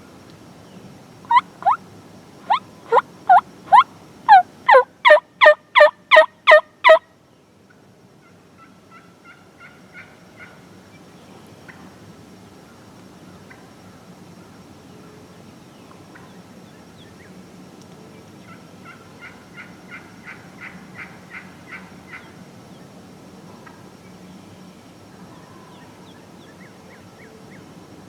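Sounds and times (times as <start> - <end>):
small birds chirping: 1.3 - 1.8, 2.5 - 5.2
turkey yelping: 1.3 - 1.8, 2.5 - 7.0.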